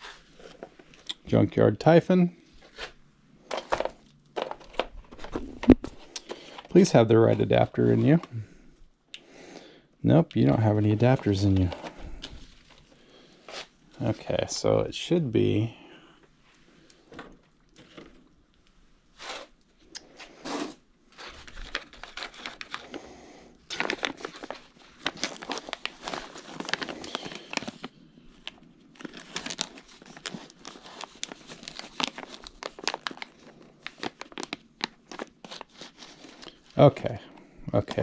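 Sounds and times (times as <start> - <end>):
plastic packaging crinkling: 10.4 - 14.5, 19.2 - 36.9.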